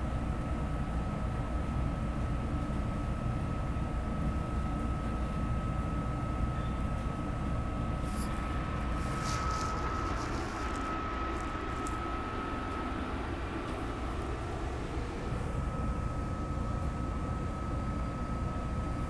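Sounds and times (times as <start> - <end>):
constant high whine: 0.0 - 19.0
train car rumble: 7.2 - 16.7.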